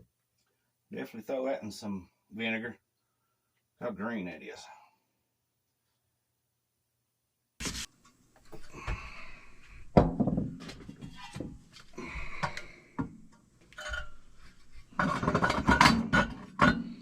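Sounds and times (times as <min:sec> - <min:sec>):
hard objects knocking on a surface: 0:10.0 - 0:11.6.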